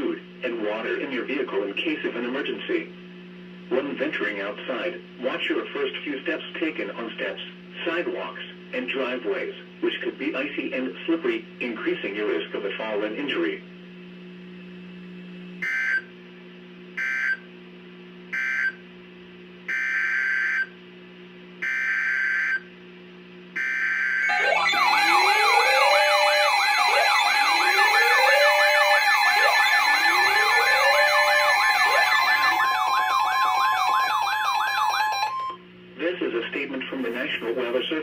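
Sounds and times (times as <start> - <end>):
low steady hum: 0.0 - 38.0
siren tones: 19.7 - 20.7, 21.6 - 22.7, 23.6 - 35.7
digital data tone screech: 23.6 - 35.6
steady alert tones: 23.6 - 35.6.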